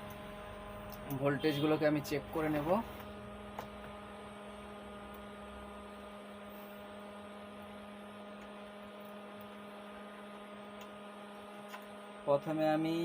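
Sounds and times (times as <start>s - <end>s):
amplifier mains hum: 0.0s - 13.0s.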